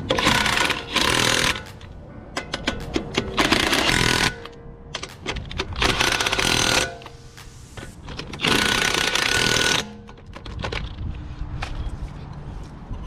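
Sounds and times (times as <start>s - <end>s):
impact wrench hammering: 0.0s - 10.3s.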